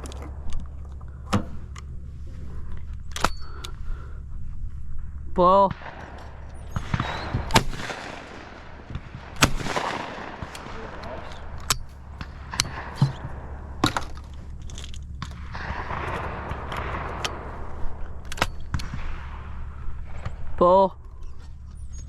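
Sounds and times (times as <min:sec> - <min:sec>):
shotgun shots: 0:05.7 - 0:20.6.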